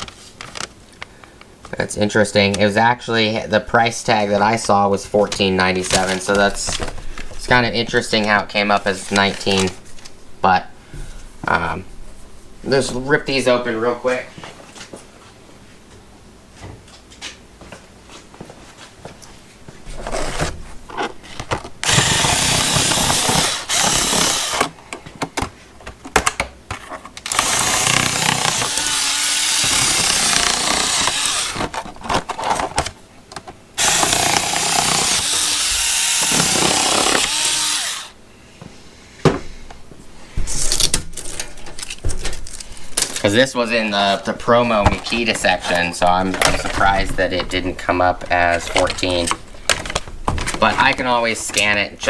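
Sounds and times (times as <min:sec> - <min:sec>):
packaging tearing and crinkling: 0:21.5 - 0:24.7, 0:27.2 - 0:33.0.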